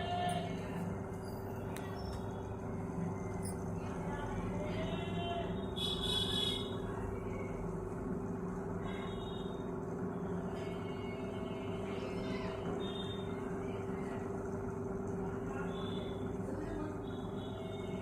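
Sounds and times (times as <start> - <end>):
microwave oven humming: 0.0 - 18.0.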